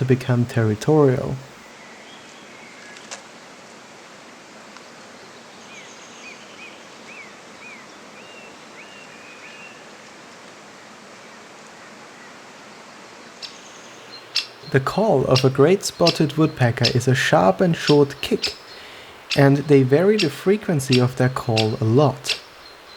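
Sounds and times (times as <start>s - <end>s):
outdoor hiss: 0.0s - 22.9s
thin bird calls: 13.4s - 22.9s.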